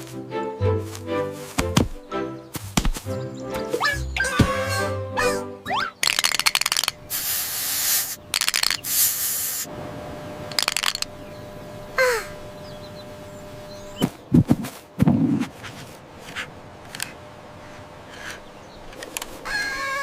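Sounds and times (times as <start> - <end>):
low thuds: 1.5 - 3.2
bursts of clicks: 6.0 - 7.0, 8.2 - 8.9, 10.5 - 11.1
fast rattle: 6.0 - 7.0, 8.3 - 8.9, 10.5 - 11.1.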